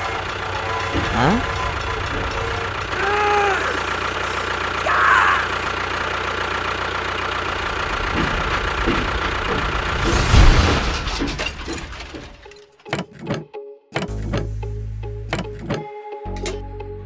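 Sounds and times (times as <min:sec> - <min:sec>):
small engine rattling: 0:00.0 - 0:14.7
loud thump: 0:07.6 - 0:12.4.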